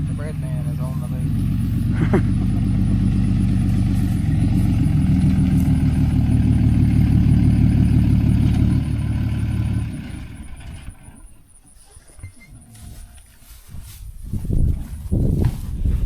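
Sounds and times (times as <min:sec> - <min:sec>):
vehicle engine running: 0:00.0 - 0:11.6.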